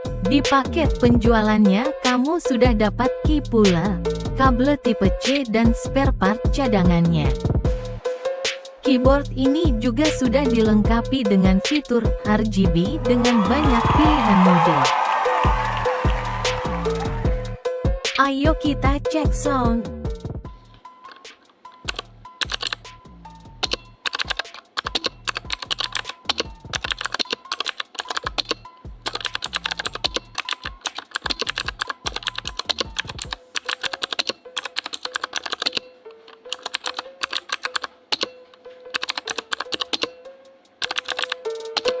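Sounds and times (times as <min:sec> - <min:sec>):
mechanical keyboard key clicks: 0:23.6 - 0:40.2, 0:40.8 - 0:42.0.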